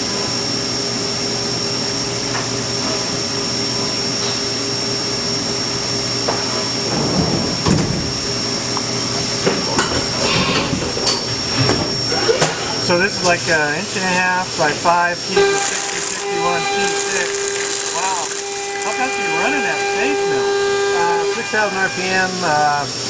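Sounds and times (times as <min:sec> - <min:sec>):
milling machine spindle whine: 0:11.2 - 0:23.0
cutter crunching and clattering: 0:15.4 - 0:20.4.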